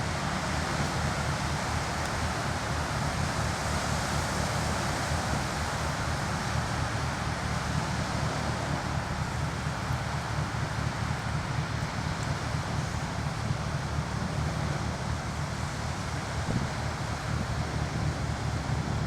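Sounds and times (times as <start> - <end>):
wind blowing across microphone: 1.5 - 19.0.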